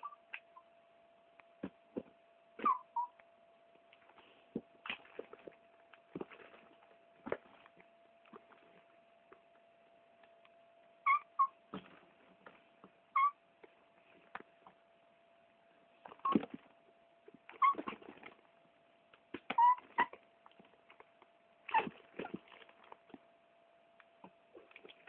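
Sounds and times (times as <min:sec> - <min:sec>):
faint steady hum: 0:00.0 - 0:25.0
cat chirping meows: 0:02.6 - 0:03.2, 0:11.1 - 0:11.6, 0:13.2 - 0:13.4.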